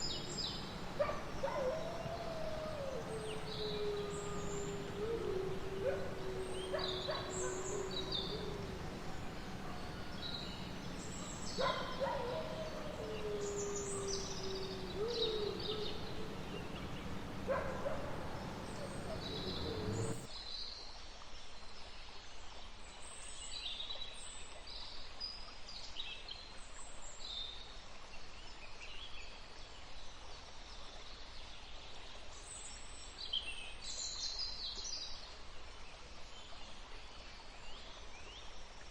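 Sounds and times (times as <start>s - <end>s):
birds chirping: 0.0s - 20.3s
light hiss: 0.0s - 20.3s
wolf-like howls: 0.0s - 20.3s.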